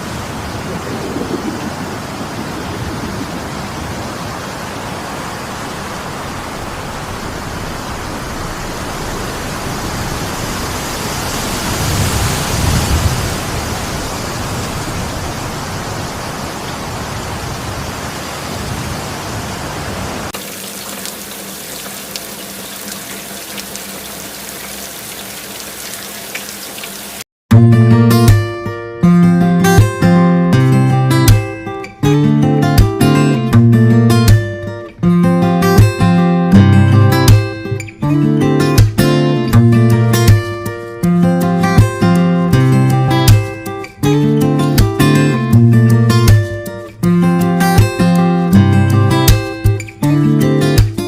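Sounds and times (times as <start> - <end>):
outdoor nature rushing noise: 0.0 - 27.3, 30.0 - 51.0
strummed acoustic guitar music: 27.5 - 51.0.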